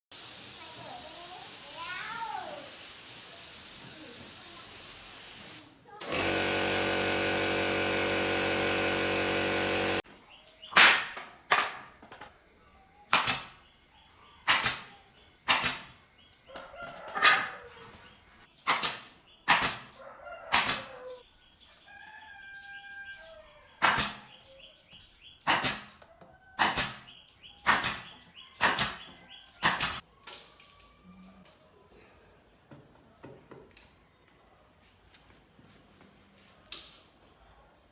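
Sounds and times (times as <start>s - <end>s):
power tool running: 5.5s - 10.0s.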